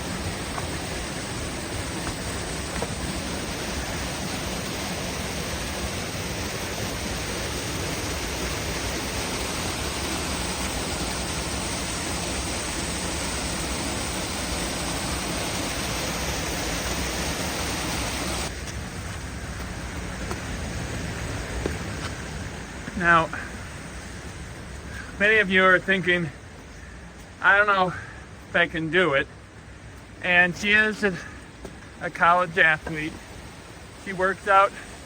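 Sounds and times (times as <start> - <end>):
waterfall rushing: 0.0 - 18.5.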